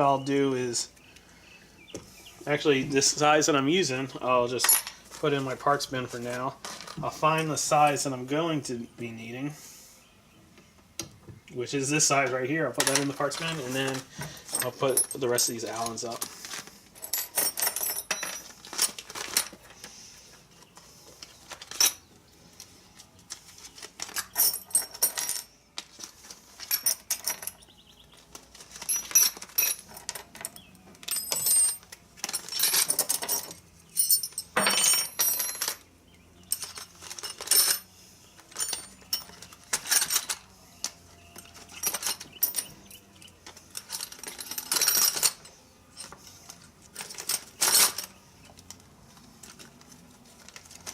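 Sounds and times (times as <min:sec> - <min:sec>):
metal keys clinking and rattling: 0:12.8 - 0:19.8, 0:24.0 - 0:25.5, 0:26.6 - 0:27.7, 0:28.4 - 0:35.8, 0:36.4 - 0:48.7.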